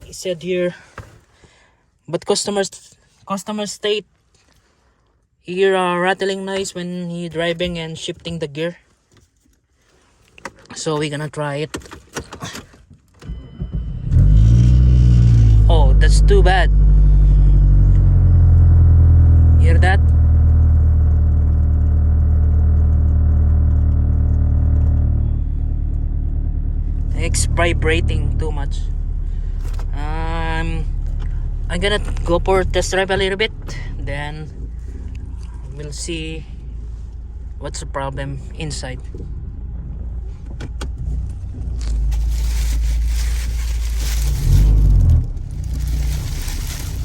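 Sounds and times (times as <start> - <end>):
car engine droning: 13.2 - 47.0.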